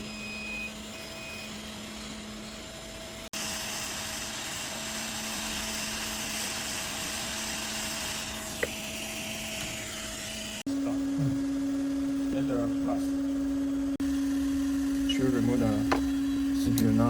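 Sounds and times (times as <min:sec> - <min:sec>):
hot air gun blowing: 0:03.3 - 0:10.7
faint hum: 0:10.2 - 0:17.0.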